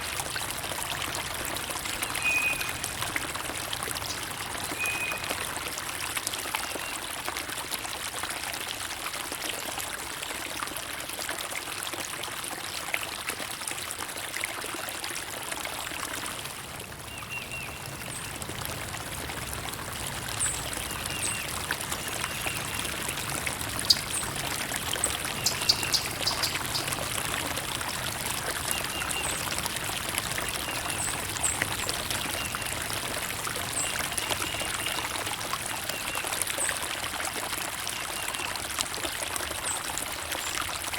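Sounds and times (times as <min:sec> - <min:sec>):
stream water trickling: 0:00.0 - 0:40.9
high bird chirps: 0:25.4 - 0:26.9.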